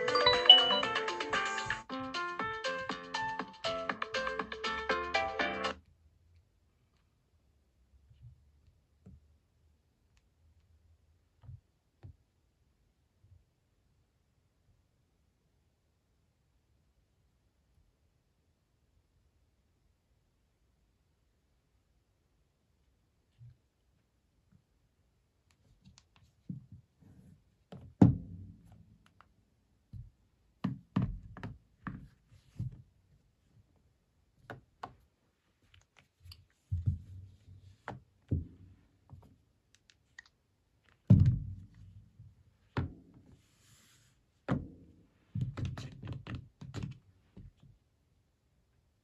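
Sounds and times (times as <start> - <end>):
thuds and knocks on hard surface: 27.7 - 28.8, 41.1 - 41.8.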